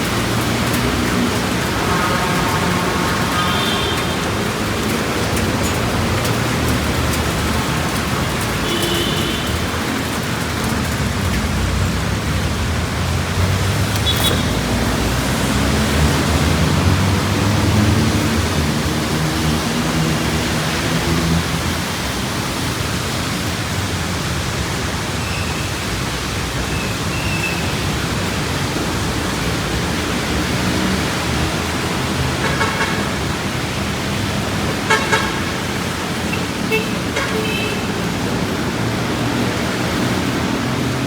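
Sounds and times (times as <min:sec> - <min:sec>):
rain hiss: 0:00.0 - 0:41.0
road traffic: 0:00.0 - 0:41.0
vehicle horn toots: 0:01.8 - 0:04.4, 0:08.6 - 0:09.6, 0:34.9 - 0:38.0.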